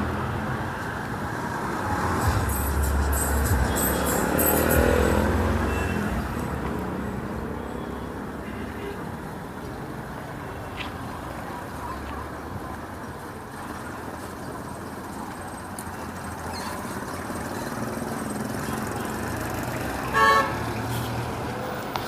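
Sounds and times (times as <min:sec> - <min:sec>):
hum of passing cars: 0:00.0 - 0:08.4, 0:11.0 - 0:22.0
car horn toot: 0:02.2 - 0:06.6, 0:20.1 - 0:20.6.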